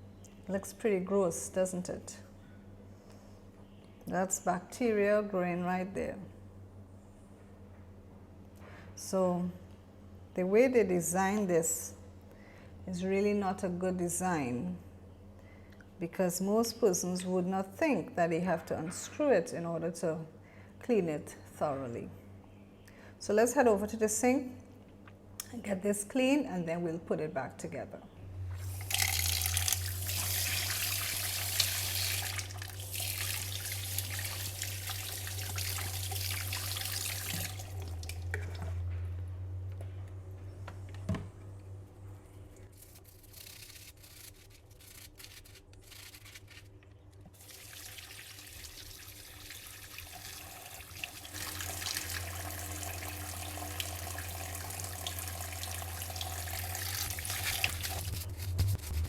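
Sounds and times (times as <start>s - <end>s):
tap water running into a sink: 28.6s - 38.6s, 47.4s - 58.2s.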